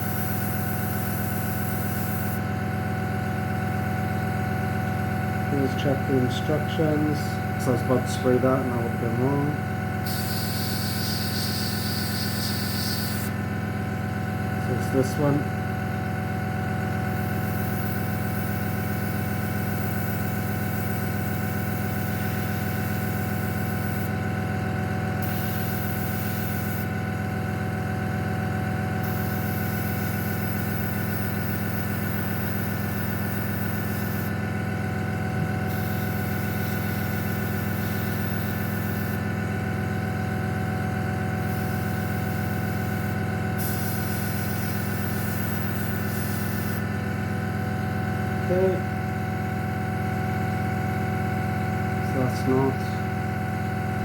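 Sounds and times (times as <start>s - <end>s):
airbrush air hiss: 0.0s - 2.4s, 10.0s - 13.4s, 17.1s - 24.2s, 25.2s - 26.9s, 29.0s - 34.4s, 35.6s - 39.2s, 41.4s - 46.9s
compressor humming: 0.0s - 54.0s.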